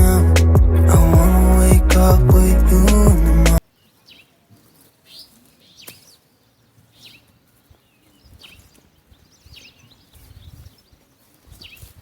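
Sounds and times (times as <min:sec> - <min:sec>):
low rumbling microphone noise: 0:00.0 - 0:03.6
birds chirping: 0:00.0 - 0:11.9.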